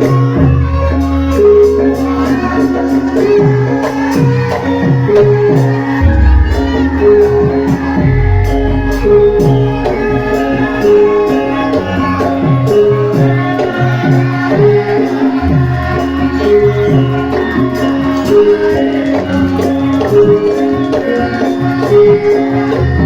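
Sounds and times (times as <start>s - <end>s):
struck pitched gamelan notes: 0.0s - 23.0s
drum strokes dropping in pitch: 6.0s - 13.6s.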